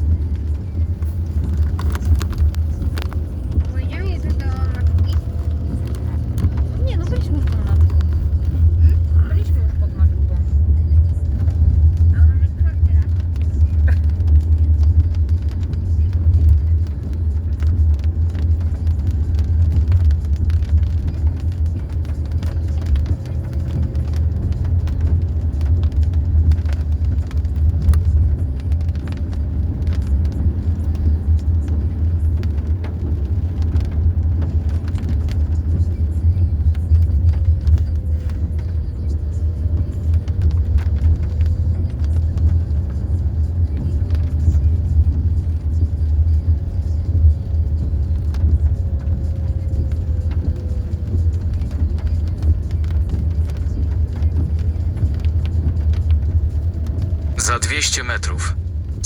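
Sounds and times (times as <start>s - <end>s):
car engine and road rumble: 0.0s - 59.0s.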